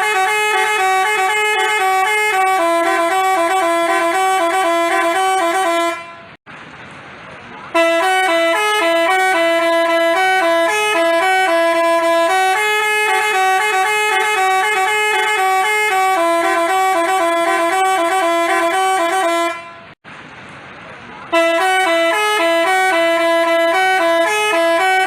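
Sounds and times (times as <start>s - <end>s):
bus horn playing a tune: 0.0s - 6.4s, 7.7s - 20.0s, 21.3s - 25.0s.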